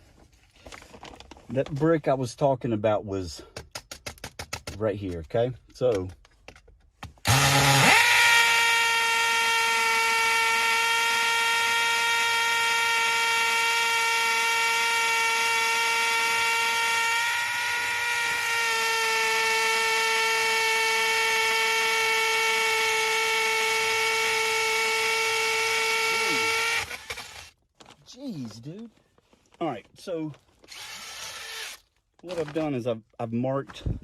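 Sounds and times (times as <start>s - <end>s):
electric drill whining: 7.2s - 27.6s, 30.6s - 31.9s.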